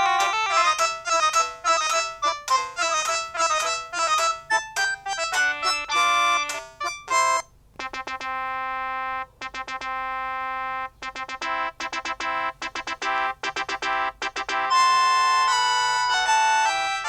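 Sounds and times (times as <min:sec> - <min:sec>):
synthesized phone ringtones: 0:00.0 - 0:17.0.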